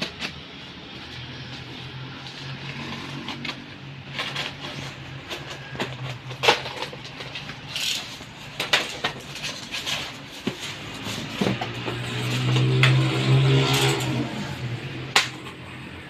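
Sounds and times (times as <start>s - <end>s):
packaging clicks and knocks: 0.0s - 0.5s, 2.9s - 13.1s
packaging rustling: 0.0s - 12.4s.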